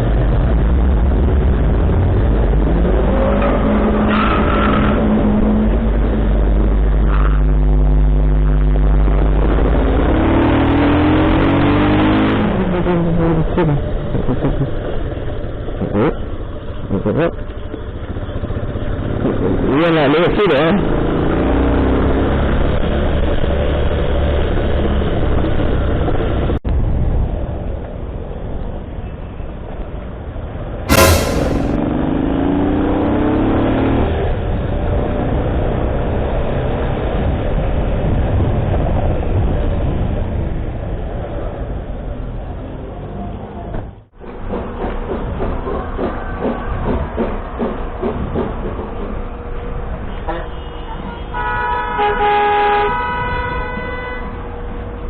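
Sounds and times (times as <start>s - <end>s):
road rumble: 0.0s - 32.6s.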